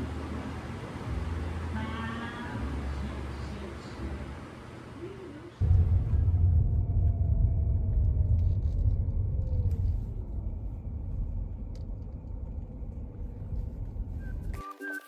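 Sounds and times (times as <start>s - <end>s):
car road and engine rumble: 0.0s - 4.6s, 5.6s - 14.6s.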